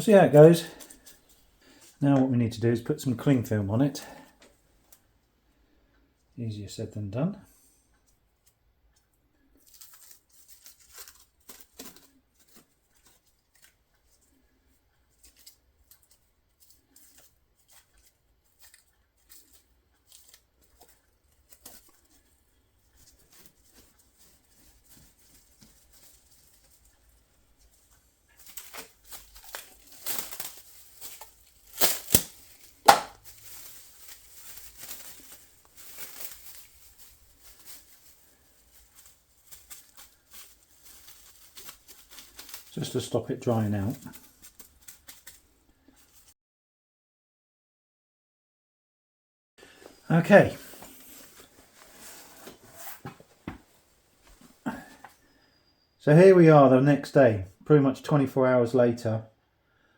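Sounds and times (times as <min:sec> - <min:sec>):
cling film rustling and crackling: 0:00.0 - 0:06.1, 0:07.5 - 0:46.3, 0:49.6 - 0:55.4
cling film snaps: 0:28.5 - 0:33.6.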